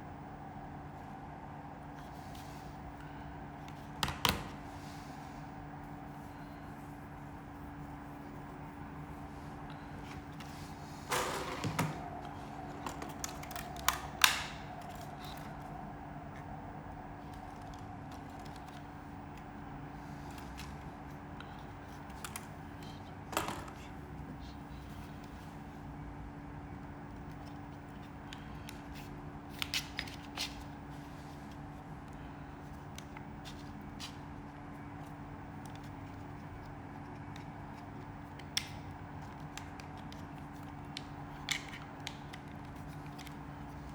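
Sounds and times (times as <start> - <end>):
steady low hum: 0.0 - 43.9
items clicking and tapping: 3.7 - 4.7, 9.3 - 15.8, 20.3 - 25.4
plastic items clicking: 11.1 - 15.8.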